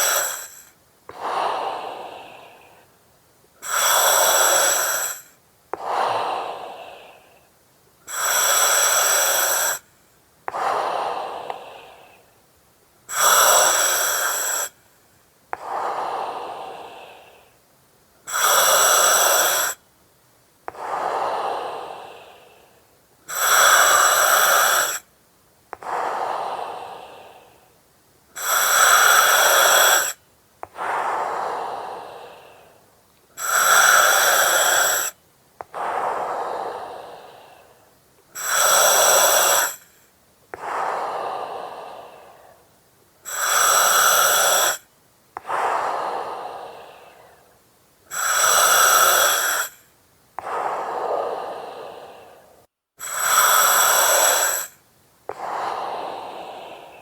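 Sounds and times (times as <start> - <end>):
gas hissing through oxygen mask: 0.0 - 1.4, 3.6 - 6.2, 8.1 - 9.8, 13.1 - 14.8, 18.3 - 19.8, 23.3 - 25.0, 28.4 - 32.5, 33.4 - 37.2, 38.4 - 39.9, 43.3 - 44.8, 48.1 - 49.8, 53.0 - 57.0
person breathing: 0.0 - 12.4, 13.1 - 19.8, 20.7 - 25.1, 25.7 - 27.8, 28.4 - 57.0.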